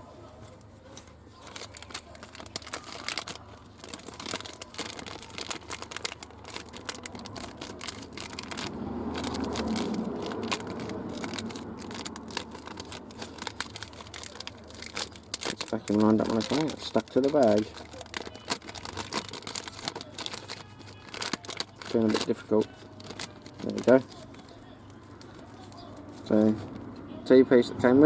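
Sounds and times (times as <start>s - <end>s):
plastic bags crinkling: 0.8s - 26.9s.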